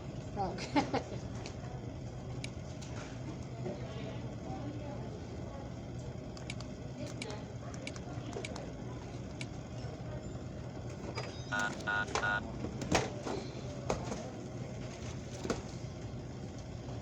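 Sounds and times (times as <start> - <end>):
steady low hum: 0.0 - 17.0
short electronic beeps: 11.5 - 12.4.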